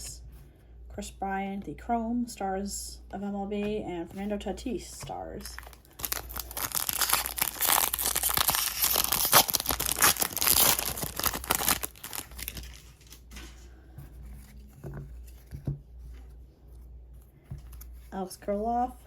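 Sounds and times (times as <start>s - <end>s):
wrapper tearing and crinkling: 5.5s - 13.3s.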